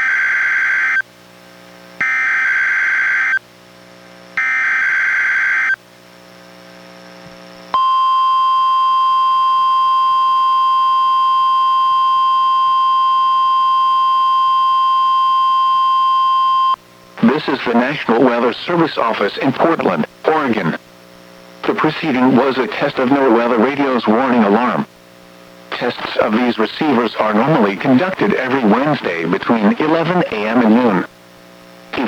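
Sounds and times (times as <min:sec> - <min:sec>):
steady warning alarm tone: 0:00.0 - 0:01.0, 0:02.0 - 0:03.4, 0:04.4 - 0:05.8, 0:07.8 - 0:19.2.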